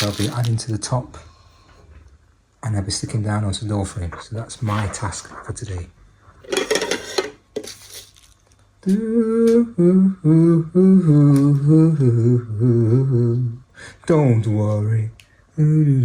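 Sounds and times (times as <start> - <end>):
man humming a tune: 8.8 - 13.7, 15.6 - 16.0.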